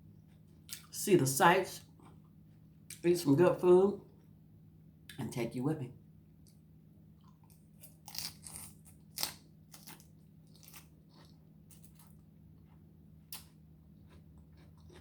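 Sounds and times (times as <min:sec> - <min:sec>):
person chewing crisp food: 0:00.1 - 0:00.9, 0:06.4 - 0:15.0.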